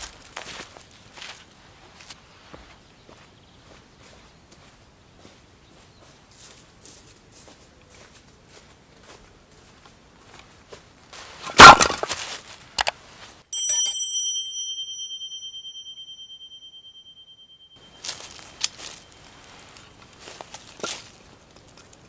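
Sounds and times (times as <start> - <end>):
handling and rustling: 11.2 - 13.4, 17.8 - 22.0
metal object ringing bell-like: 13.6 - 19.1.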